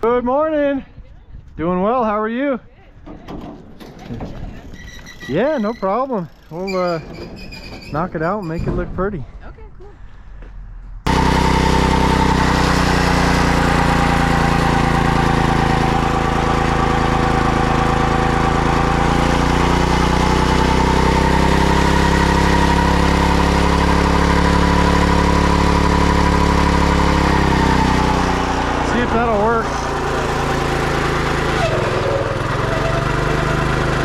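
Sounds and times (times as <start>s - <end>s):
engine running: 10.9s - 34.0s.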